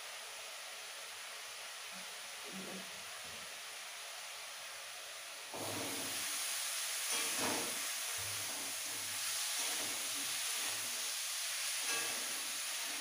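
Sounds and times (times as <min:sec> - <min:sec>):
food sizzling in hot oil: 0:05.2 - 0:13.0.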